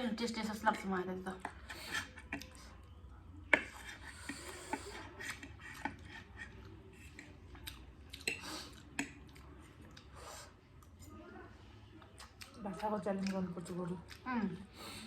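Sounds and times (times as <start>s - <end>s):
chewing: 1.4s - 11.2s, 11.8s - 15.0s
slurping: 3.6s - 10.9s
hissy breaths: 4.0s - 5.2s.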